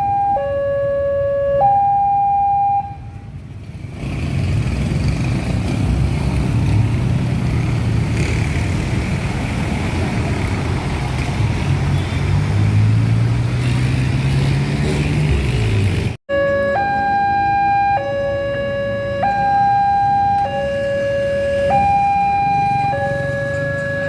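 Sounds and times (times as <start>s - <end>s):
rushing wheel and rail noise: 3.0s - 16.2s.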